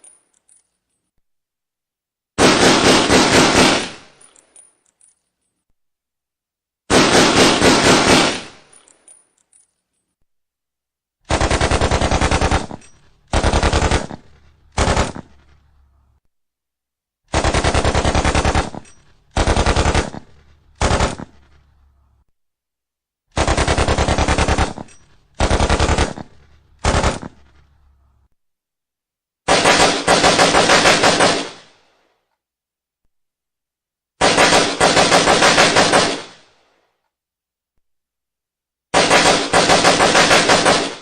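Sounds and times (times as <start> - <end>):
automatic gunfire bursts: 2.4 - 4.1, 6.9 - 8.6, 11.3 - 15.3, 17.3 - 21.3, 23.4 - 27.4, 29.5 - 31.6, 34.2 - 36.4, 39.0 - 41.0.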